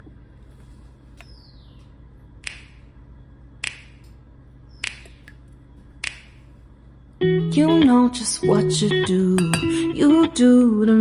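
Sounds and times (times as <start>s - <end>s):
low steady hum: 0.0s - 11.0s
finger snaps on a beat: 2.4s - 2.8s, 3.6s - 3.9s, 4.8s - 5.2s, 6.0s - 6.3s
r and b song: 7.2s - 11.0s.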